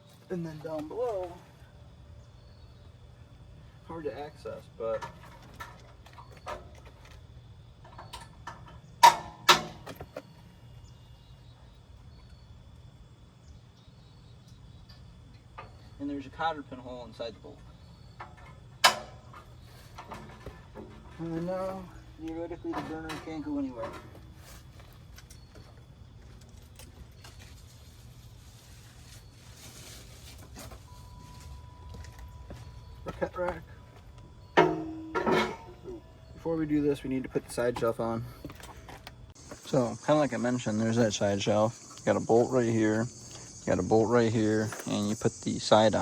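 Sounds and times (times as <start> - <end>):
faint clicks of grill parts: 7.8 - 10.4, 14.4 - 16.0
thin high tone: 39.4 - 46.0.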